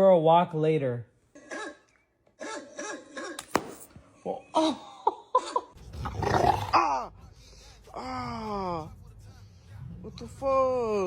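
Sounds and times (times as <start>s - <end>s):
dog growling: 6.0s - 7.0s.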